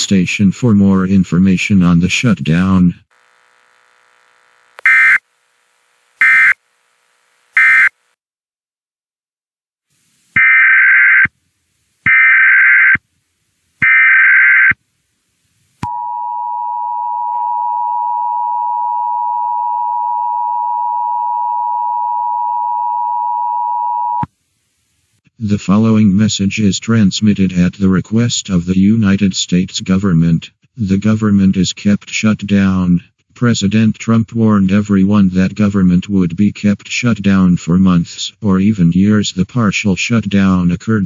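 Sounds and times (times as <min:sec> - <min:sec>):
two-tone attention signal: 0:04.8 - 0:05.2, 0:06.2 - 0:06.6
alert data bursts: 0:04.8 - 0:05.3, 0:06.2 - 0:06.6, 0:07.6 - 0:08.0.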